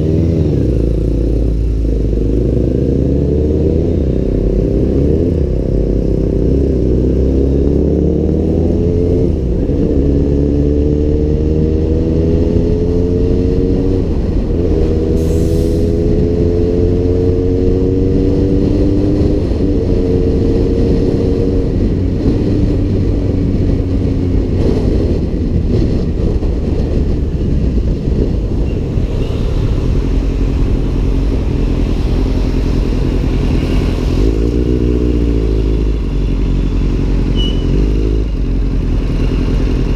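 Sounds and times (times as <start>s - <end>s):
motorcycle engine accelerating: 0.0s - 39.9s
wind rumble on microphone: 0.0s - 39.9s.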